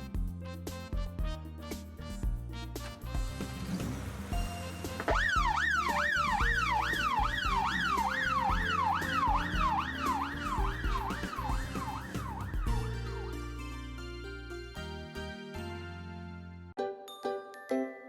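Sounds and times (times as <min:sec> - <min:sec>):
background music: 0:00.0 - 0:18.0
electronic siren: 0:05.0 - 0:13.5.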